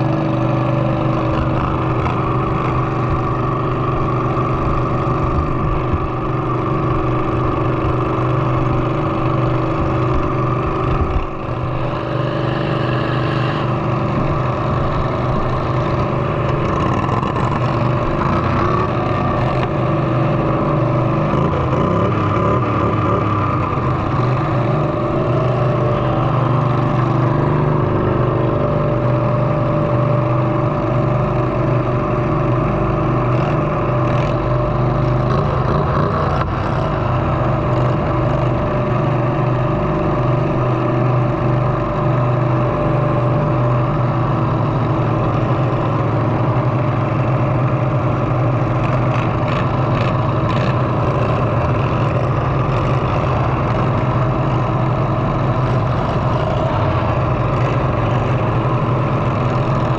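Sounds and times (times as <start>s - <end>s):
lawn mower engines running: 0.0s - 59.9s.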